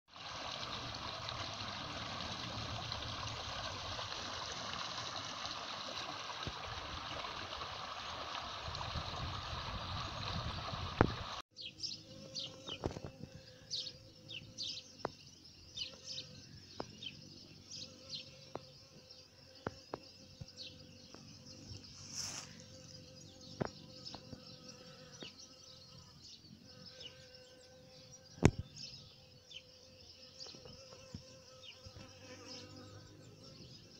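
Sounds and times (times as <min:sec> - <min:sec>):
small birds chirping: 0:11.6 - 0:33.9.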